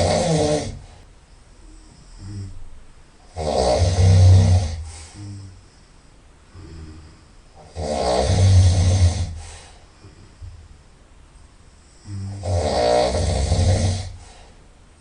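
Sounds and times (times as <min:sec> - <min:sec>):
person snoring: 0:00.0 - 0:00.9, 0:01.7 - 0:02.6, 0:03.3 - 0:05.7, 0:06.5 - 0:10.4, 0:12.0 - 0:14.4
quiet breaths: 0:00.0 - 0:15.0.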